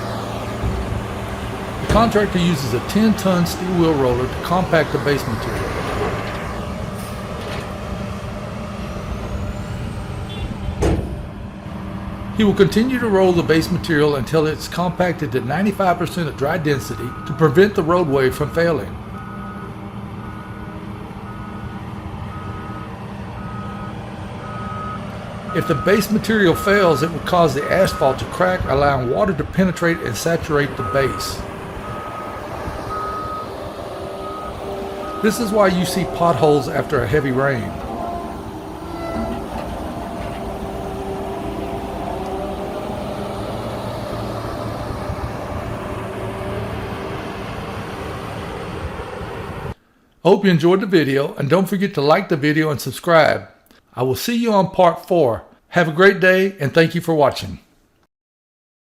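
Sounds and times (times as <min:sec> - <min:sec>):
diesel engine running: 0:00.0 - 0:49.8
backup alarm beeping: 0:08.8 - 0:10.8, 0:18.4 - 0:28.3, 0:29.6 - 0:41.3.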